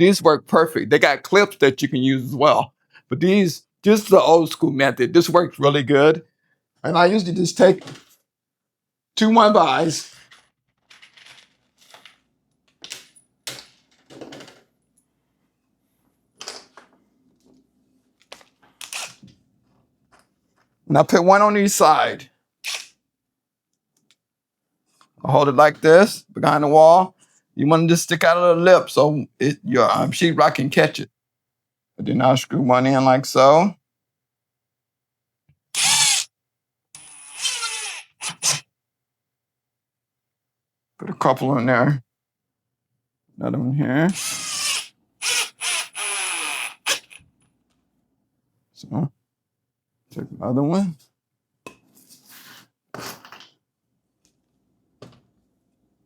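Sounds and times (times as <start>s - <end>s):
power drill driving screw: 35.8s - 36.3s, 37.0s - 38.6s, 44.1s - 47.2s.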